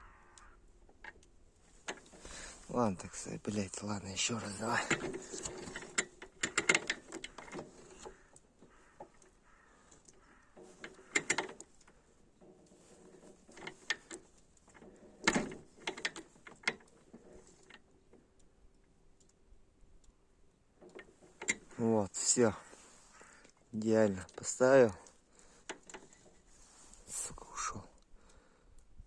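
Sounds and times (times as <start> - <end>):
metal clicks and clunks: 0.8 - 19.4, 20.8 - 27.2.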